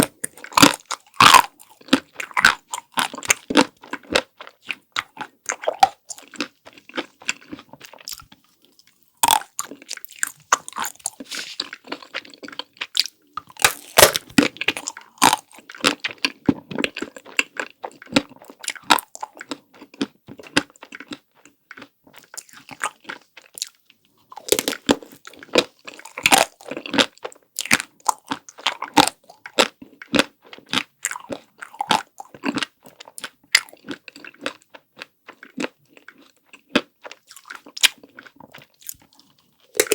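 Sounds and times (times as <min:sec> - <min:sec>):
chocolate shell crunching: 0:00.0 - 0:23.8, 0:24.4 - 0:39.9.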